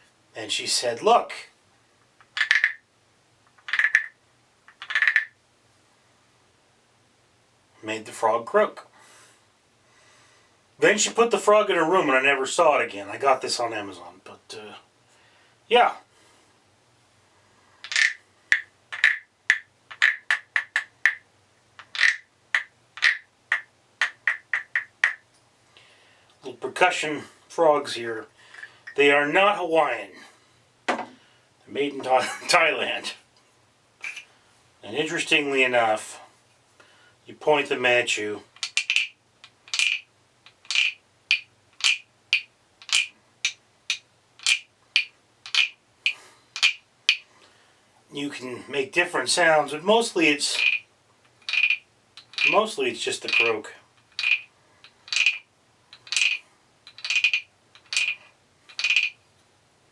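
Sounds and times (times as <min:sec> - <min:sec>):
wooden frog rasping croaks: 0:02.2 - 0:02.9, 0:03.5 - 0:05.4, 0:17.8 - 0:21.2, 0:21.8 - 0:25.3, 0:34.0 - 0:34.3, 0:38.5 - 0:47.3, 0:50.6 - 0:59.2.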